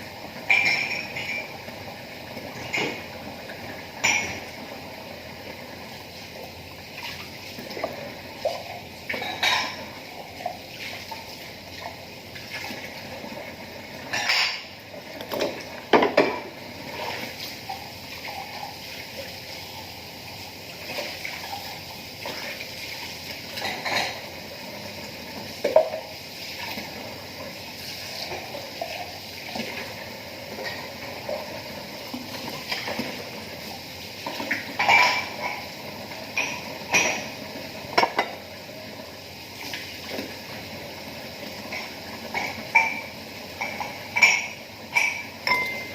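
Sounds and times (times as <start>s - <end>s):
tap water running: 0.0s - 45.9s
plates and cutlery clattering: 0.5s - 1.5s, 9.1s - 9.9s, 14.1s - 14.7s, 23.6s - 24.2s, 34.8s - 35.7s, 38.0s - 38.4s, 41.7s - 45.9s.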